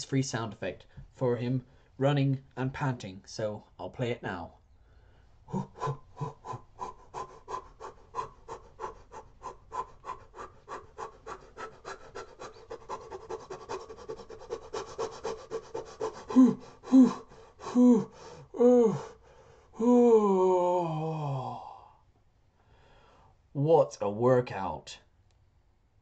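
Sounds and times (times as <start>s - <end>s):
man breathing while running: 4.8s - 19.7s
man panting gasps: 4.8s - 19.8s, 22.6s - 23.4s.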